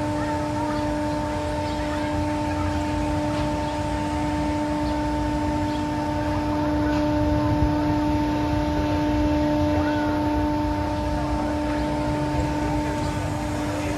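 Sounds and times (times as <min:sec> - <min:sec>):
helicopter flying: 0:00.0 - 0:13.9.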